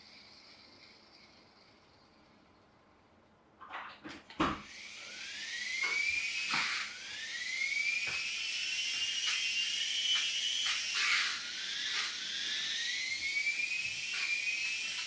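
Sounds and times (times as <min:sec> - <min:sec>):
electric motor whining: 0:04.6 - 0:15.0.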